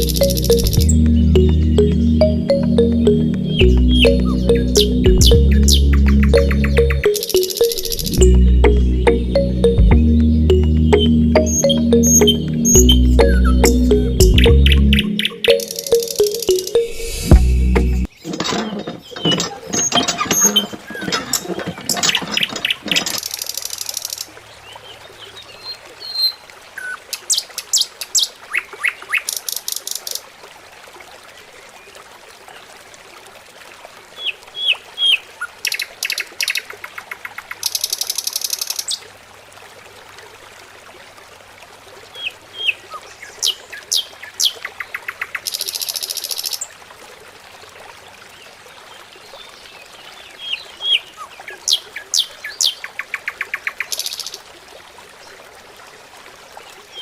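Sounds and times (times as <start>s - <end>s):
songbird chirping and trilling: 0.0s - 24.2s.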